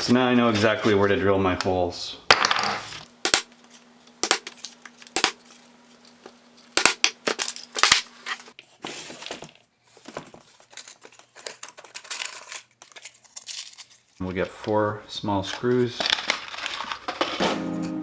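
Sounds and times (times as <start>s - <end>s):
paper rustling and crinkling: 7.6s - 17.6s.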